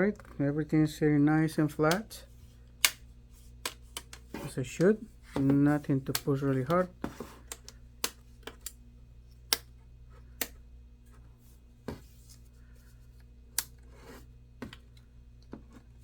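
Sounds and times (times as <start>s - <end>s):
plastic clips snapping: 2.8s - 3.0s, 6.0s - 6.8s, 7.4s - 8.8s.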